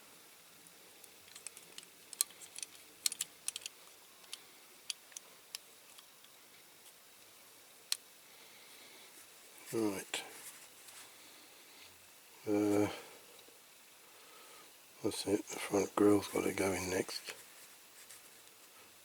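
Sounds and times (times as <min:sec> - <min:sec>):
small plastic toy parts clicking: 0:01.0 - 0:06.3.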